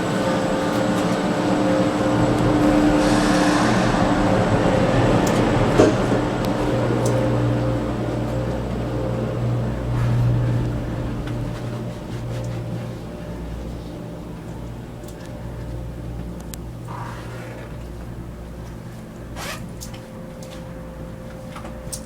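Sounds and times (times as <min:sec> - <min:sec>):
cable car mechanical hum: 0:00.0 - 0:22.0
cable car clunk: 0:00.7 - 0:13.6.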